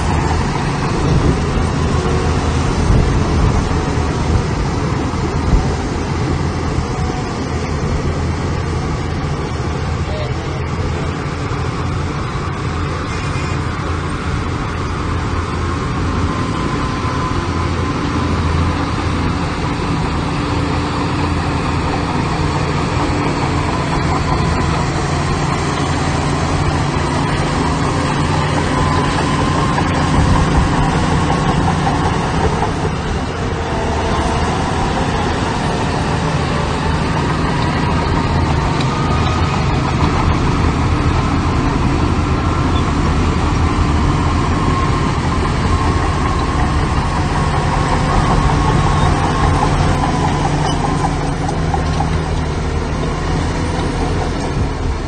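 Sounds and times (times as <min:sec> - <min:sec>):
diesel machinery engine drone: 0:00.0 - 0:55.0.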